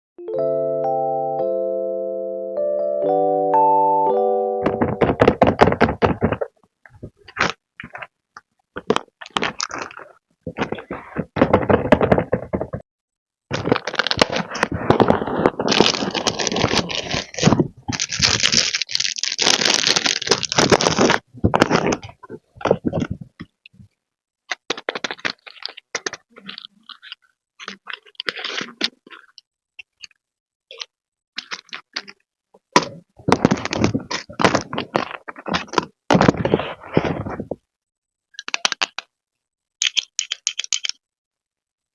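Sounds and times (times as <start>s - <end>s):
clicks and taps: 4.6s - 9.8s, 38.4s - 39.1s, 39.8s - 41.0s
packaging crinkling and rustling: 4.7s - 8.1s, 8.8s - 12.8s, 13.5s - 23.5s, 24.5s - 29.3s, 33.2s - 37.6s.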